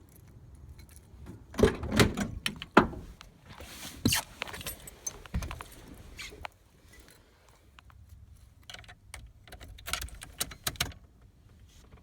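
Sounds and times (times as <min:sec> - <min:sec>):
knocks and clunks: 0:01.3 - 0:03.2, 0:05.2 - 0:05.8.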